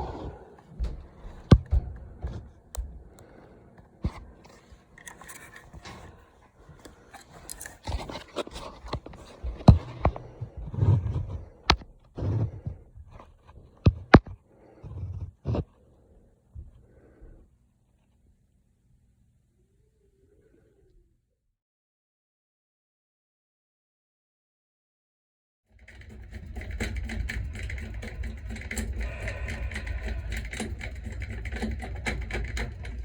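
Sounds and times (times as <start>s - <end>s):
metal scraping: 4.0s - 11.6s, 25.8s - 33.0s
tools and metal parts clicking: 5.0s - 5.9s, 7.1s - 8.3s.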